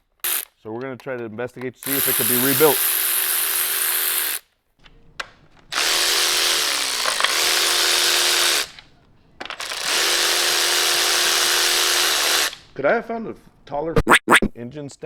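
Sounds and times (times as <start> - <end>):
electric power tool running: 0.2 - 0.4, 1.8 - 4.4, 5.7 - 12.7.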